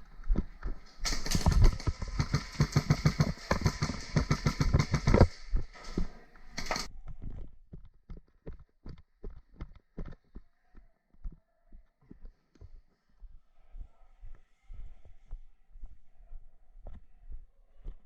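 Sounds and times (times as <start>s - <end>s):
gear rustling: 0.0s - 6.9s
footsteps crunching on rough ground: 0.0s - 11.4s.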